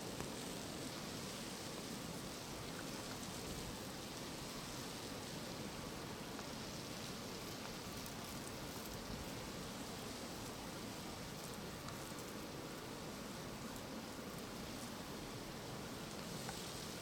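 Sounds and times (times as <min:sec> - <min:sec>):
steady outdoor hiss: 0:00.0 - 0:17.0
faint ticks: 0:16.1 - 0:16.7.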